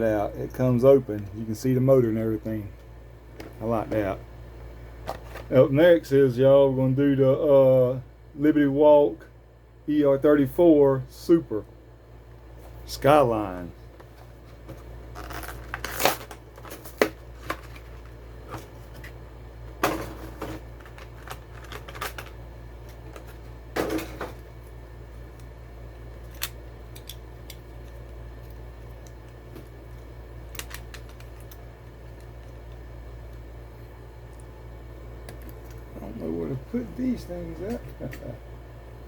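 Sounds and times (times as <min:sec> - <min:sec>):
steady low hum: 0:00.0 - 0:39.0
plastic and cardboard packaging rustling: 0:14.0 - 0:19.2, 0:20.0 - 0:24.4.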